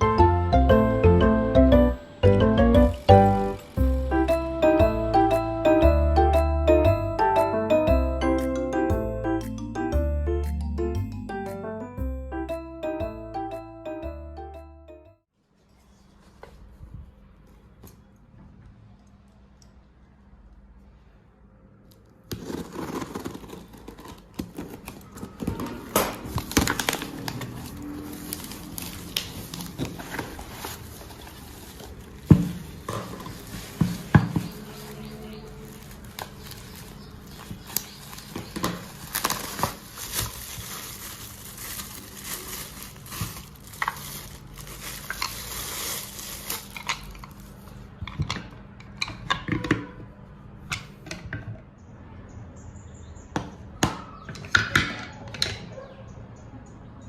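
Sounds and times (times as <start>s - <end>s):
packaging crinkling: 2.9s - 4.9s, 22.3s - 47.7s
objects clattering: 22.3s - 50.0s.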